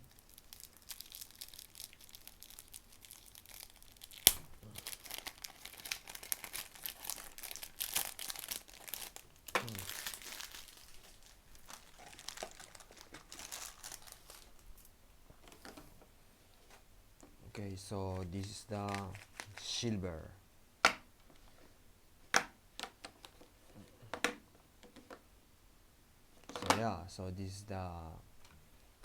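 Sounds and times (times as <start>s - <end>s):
plastic packaging crinkling: 0.0s - 14.9s, 18.5s - 19.7s.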